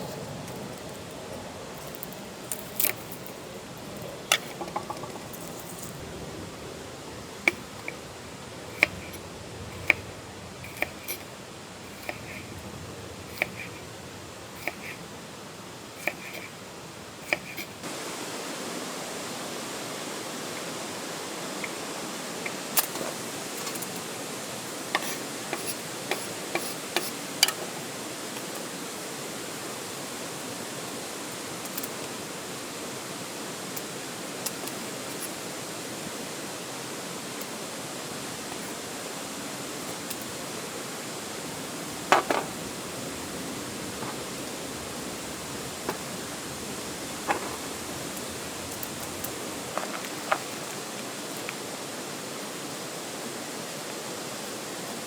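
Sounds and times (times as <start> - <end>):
steak sizzling over fire: 0.0 - 55.0
fire pops and crackles: 0.1 - 6.0, 41.4 - 51.0.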